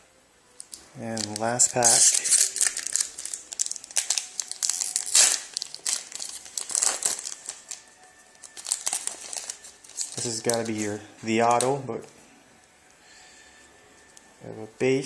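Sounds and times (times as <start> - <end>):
plastic wrapper crinkling and tearing: 0.6 - 11.8.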